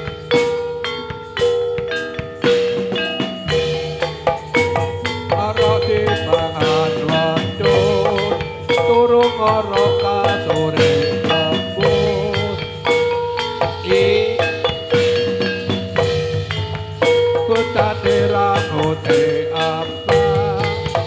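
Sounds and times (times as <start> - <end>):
drums: 0.0 - 21.0
metallophones ringing: 0.0 - 21.0.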